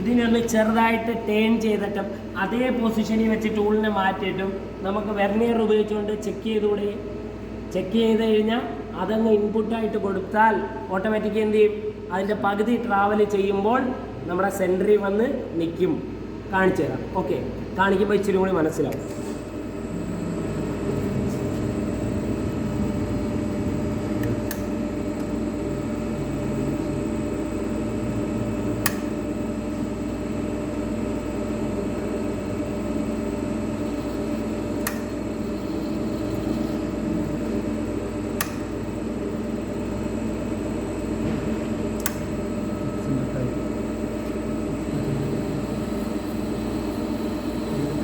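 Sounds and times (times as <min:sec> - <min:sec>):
lathe mechanical hum: 0:00.0 - 0:48.0
sharp clicks: 0:28.8 - 0:29.1, 0:38.4 - 0:38.8, 0:42.0 - 0:42.4.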